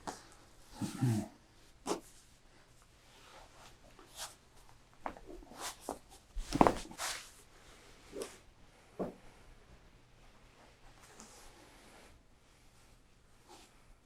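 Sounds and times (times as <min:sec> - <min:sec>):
rustles on treatment table: 0:03.2 - 0:07.5.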